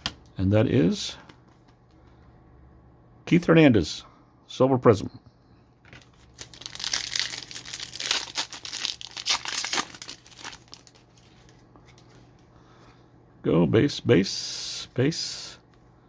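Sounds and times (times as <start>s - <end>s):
card pack wrapper tearing and crinkling: 6.0s - 11.5s.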